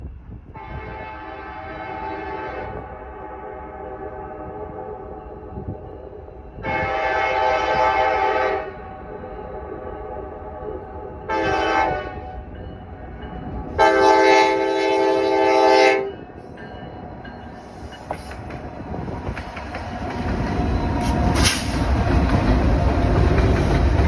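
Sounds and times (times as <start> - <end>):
locomotive air horn blasts: 0.6 - 4.2, 6.6 - 8.8, 11.3 - 12.4, 13.8 - 16.1.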